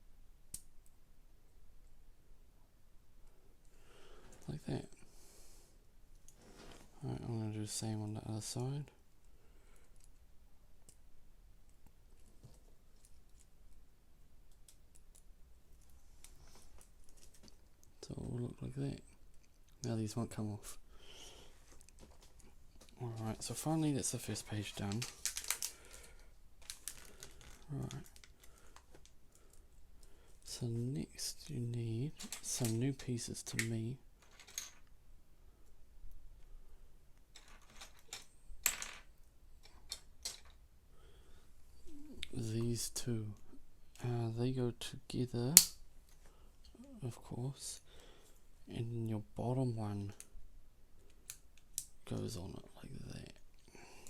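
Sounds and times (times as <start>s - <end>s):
plastic pieces clicking together: 24.8s - 28.6s.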